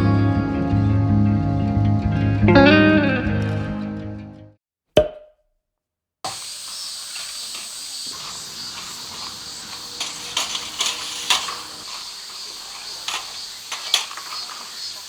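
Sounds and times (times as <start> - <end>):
steady high hiss: 6.3 - 15.0
sharp clicks and knocks: 12.7 - 14.7.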